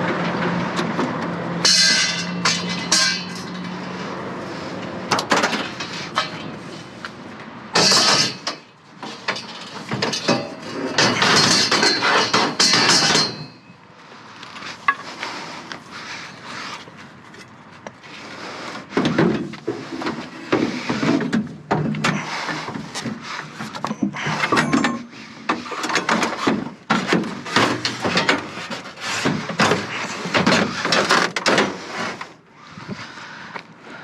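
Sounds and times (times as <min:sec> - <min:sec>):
objects knocking and clattering: 0:07.8 - 0:13.6, 0:19.0 - 0:31.8.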